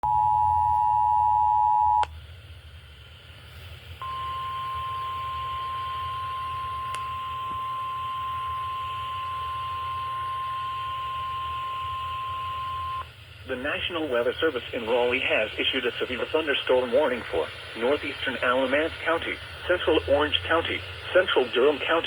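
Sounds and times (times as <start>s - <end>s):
low hum: 0.0s - 22.0s
steady weather-alert tone: 4.0s - 13.0s.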